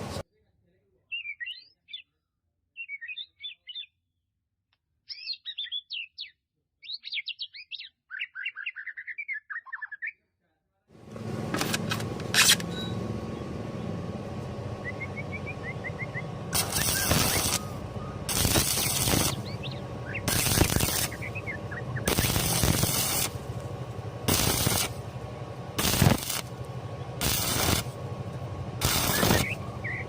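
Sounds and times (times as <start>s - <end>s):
welding arc crackling: 13.9s - 30.0s.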